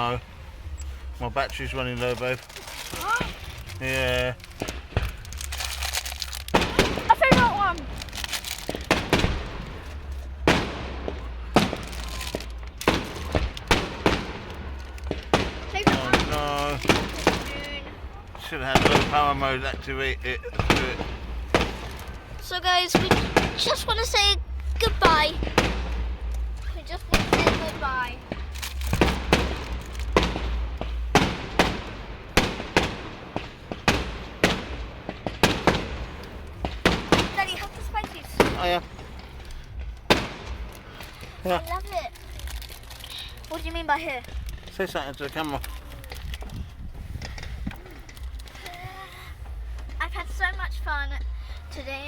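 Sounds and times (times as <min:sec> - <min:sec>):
fireworks bangs with echo: 0:00.0 - 0:48.6, 0:49.3 - 0:51.9
crackle and rumble: 0:00.0 - 0:52.0.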